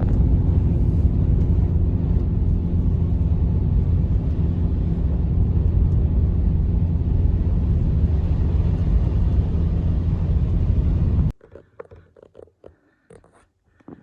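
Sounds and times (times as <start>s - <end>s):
loud low rumble: 0.0s - 11.3s.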